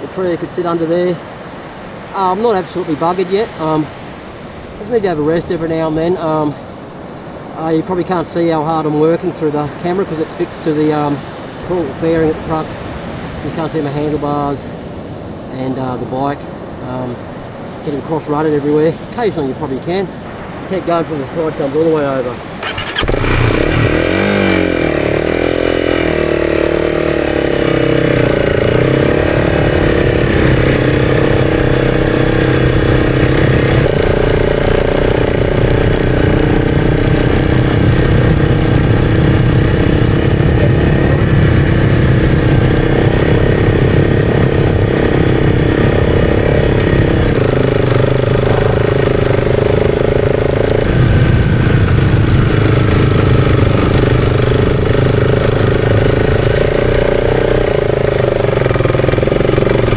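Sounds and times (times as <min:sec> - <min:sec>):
motorcycle engine revving: 0:20.2 - 0:59.9
steady rushing noise: 0:20.2 - 0:59.9.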